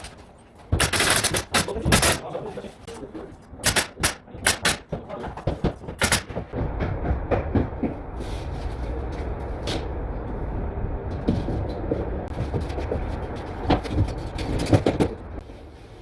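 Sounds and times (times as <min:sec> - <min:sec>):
sharp bangs: 0:00.0 - 0:02.2, 0:03.6 - 0:05.0, 0:06.0 - 0:06.6
low machine rumble: 0:06.0 - 0:14.5.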